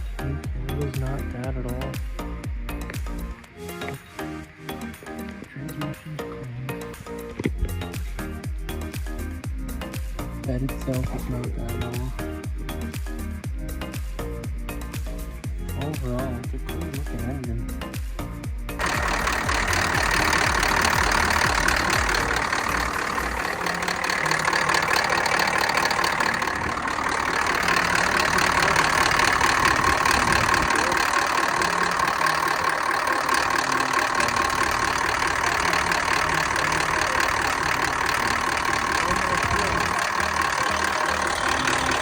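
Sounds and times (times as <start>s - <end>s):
diesel truck engine idling: 18.8s - 42.0s.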